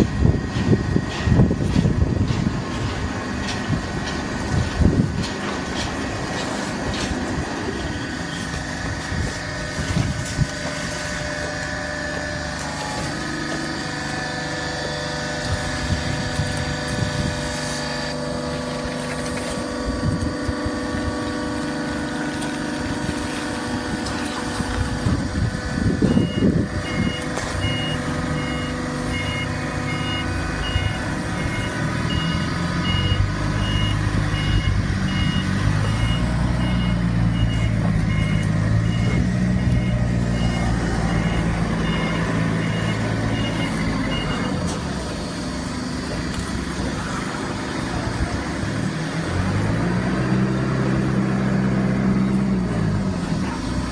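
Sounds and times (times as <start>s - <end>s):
deep engine drone: 0.0s - 53.9s
running machinery: 0.0s - 53.9s
reversing alarm beeping: 21.0s - 46.2s.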